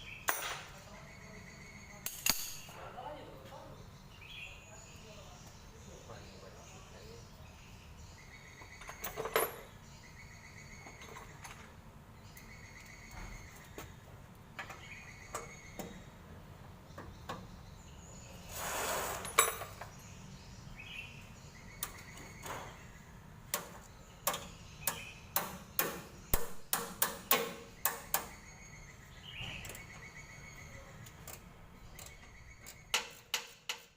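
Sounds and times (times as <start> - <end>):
sharp clicks and knocks: 23.5 - 28.4, 31.0 - 33.9.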